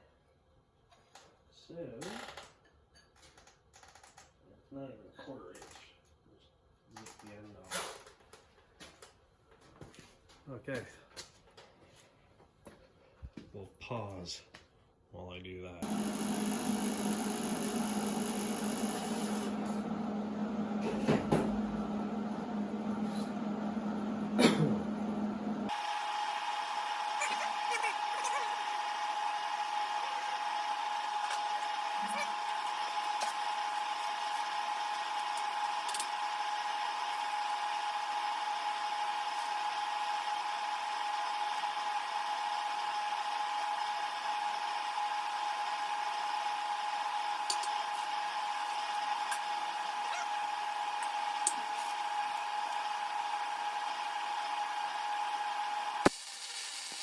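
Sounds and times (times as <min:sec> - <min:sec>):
angle grinder cutting steel: 0:15.8 - 0:19.8
machine whirring: 0:15.8 - 0:26.0.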